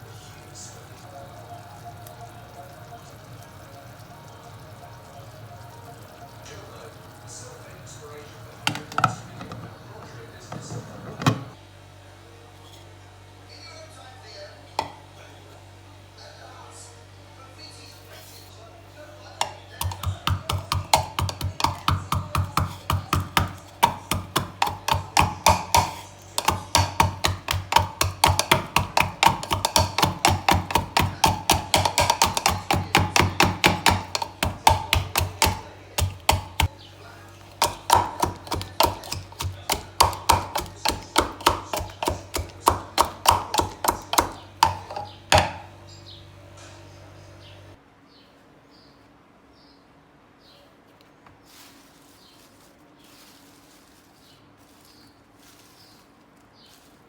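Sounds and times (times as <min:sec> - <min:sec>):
knife chopping on cutting board: 0:19.4 - 0:36.7, 0:37.6 - 0:45.7.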